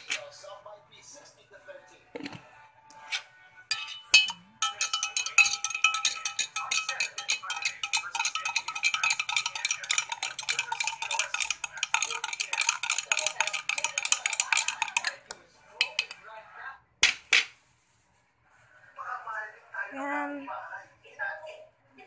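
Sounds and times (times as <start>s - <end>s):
metal spoon clinking while stirring: 3.7s - 16.2s.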